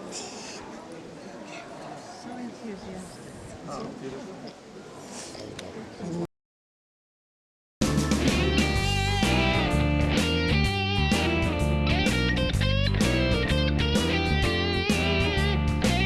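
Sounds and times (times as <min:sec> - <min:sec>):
upbeat electric guitar music: 0:07.8 - 0:16.0.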